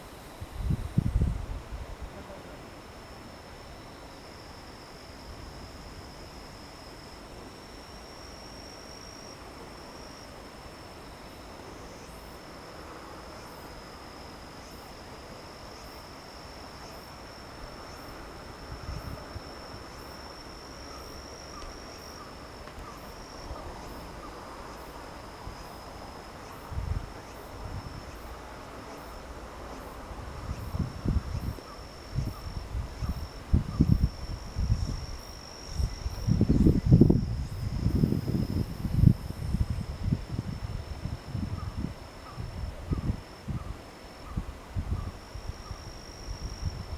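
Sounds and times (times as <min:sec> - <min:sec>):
insect high trill: 0:00.0 - 0:46.9
insect short rising calls: 0:15.6 - 0:46.9.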